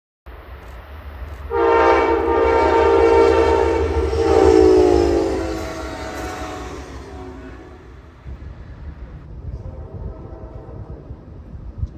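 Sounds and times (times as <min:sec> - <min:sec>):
train rumbling: 0:00.3 - 0:11.9
train horn blast: 0:01.5 - 0:08.5, 0:09.6 - 0:11.1.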